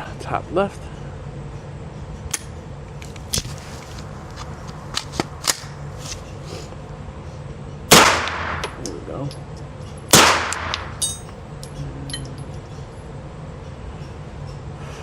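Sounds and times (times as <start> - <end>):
steady low hum: 0.0 - 15.0
gunshot with ringing tail: 7.9 - 8.8, 10.1 - 11.0.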